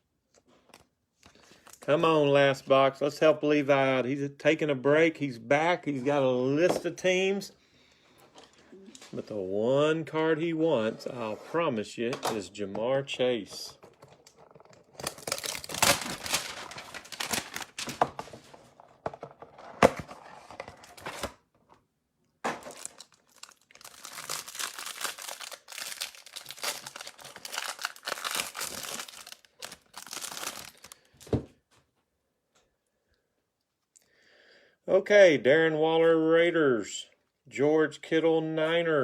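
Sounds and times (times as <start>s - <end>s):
wrapping crinkling and tearing: 13.7s - 18.4s, 22.6s - 31.3s.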